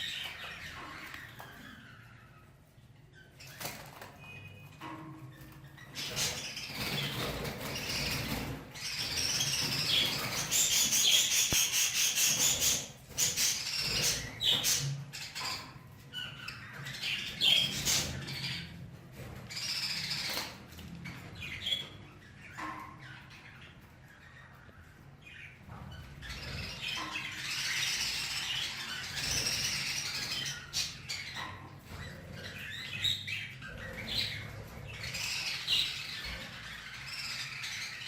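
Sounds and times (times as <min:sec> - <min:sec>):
budgerigars chirping and squawking: 0:00.0 - 0:38.0.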